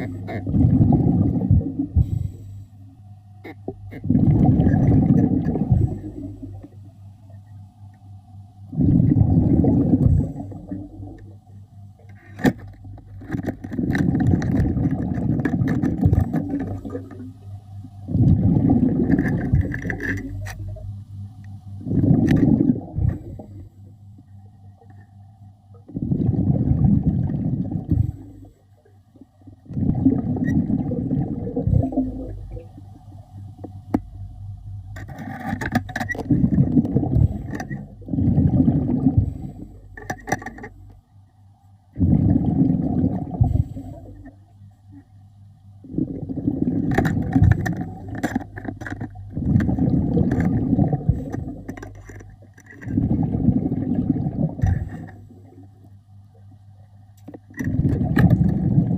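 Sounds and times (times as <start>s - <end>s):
diver exhaling bubbles underwater: 0.0s - 2.4s, 3.9s - 6.8s, 8.7s - 11.4s, 13.7s - 17.4s, 18.1s - 20.8s, 21.8s - 23.6s, 25.9s - 28.5s, 29.5s - 32.8s, 36.1s - 40.1s, 41.9s - 44.4s, 45.8s - 55.6s, 57.6s - 58.9s
faint steady hum: 0.0s - 58.9s.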